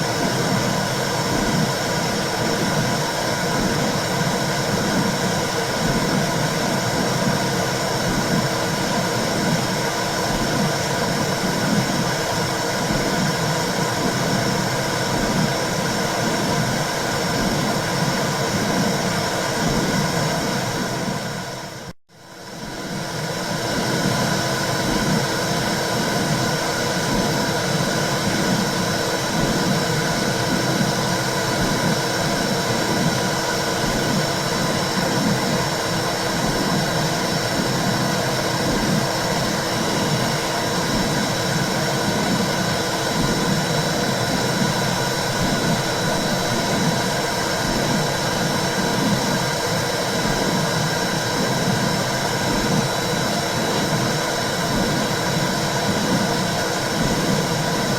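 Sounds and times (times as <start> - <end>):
slow rhythmic low pulse: 22.6 - 57.9.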